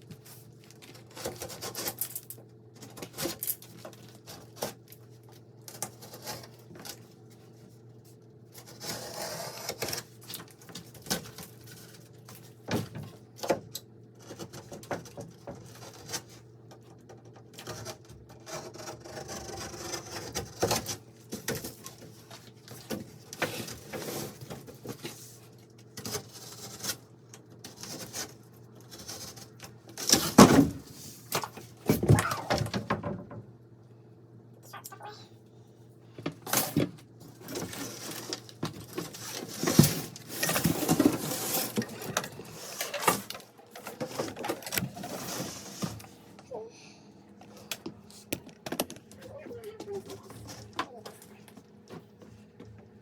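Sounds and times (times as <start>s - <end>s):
rustling scrapes: 17.6s - 27.1s, 36.5s - 46.4s.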